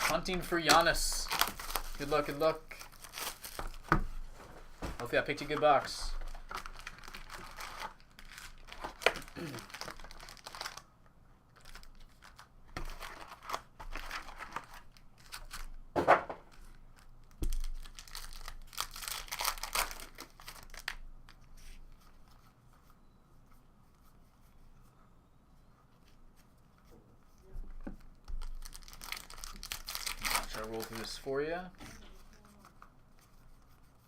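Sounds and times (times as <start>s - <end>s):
plastic wrapping tearing and crinkling: 0.0s - 3.9s, 5.6s - 10.9s, 11.6s - 15.8s, 16.5s - 21.0s, 28.4s - 32.9s.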